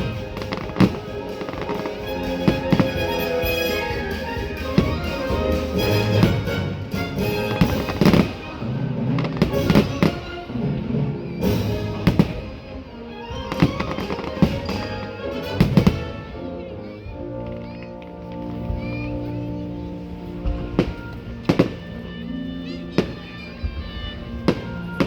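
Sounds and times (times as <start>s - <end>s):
fireworks bangs: 0.0s - 12.7s, 13.5s - 16.2s
orchestral music: 0.0s - 25.0s.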